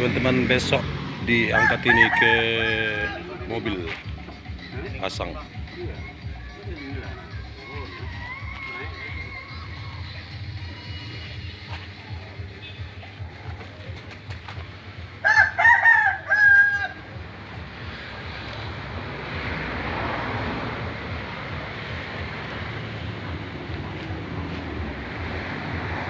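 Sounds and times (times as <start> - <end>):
rooster crowing: 1.4 - 3.2, 15.2 - 17.2.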